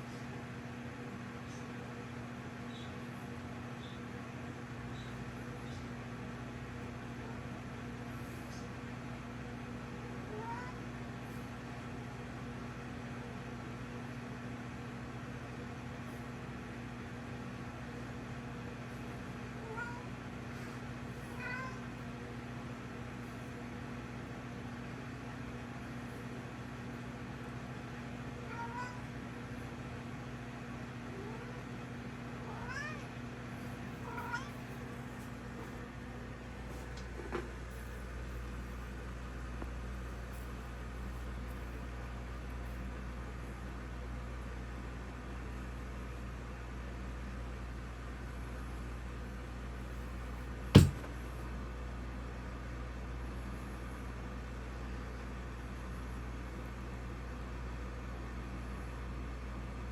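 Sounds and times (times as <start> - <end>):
room noise hum and hiss: 0.0 - 59.9
cat meowing softly: 10.2 - 10.9, 19.6 - 20.2, 21.3 - 21.9, 28.4 - 29.0, 32.4 - 33.2, 34.0 - 34.8
steady hum: 48.4 - 52.0
sharp knock: 50.8 - 51.2.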